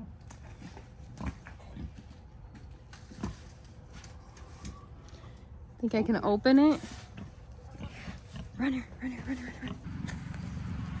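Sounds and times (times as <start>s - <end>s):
pigs grunting: 7.1s - 10.4s.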